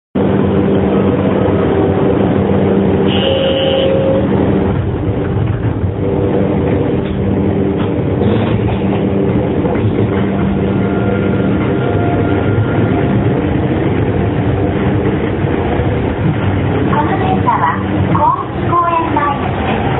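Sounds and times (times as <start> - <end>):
train running noise: 0.2 - 19.9
train traction motor hum: 0.2 - 19.9.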